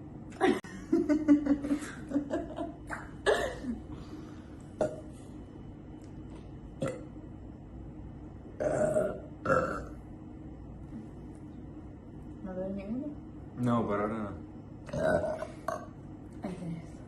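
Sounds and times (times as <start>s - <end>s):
woman burping: 3.2s - 3.8s, 4.8s - 5.1s, 6.8s - 7.1s, 8.6s - 10.0s, 14.9s - 16.0s.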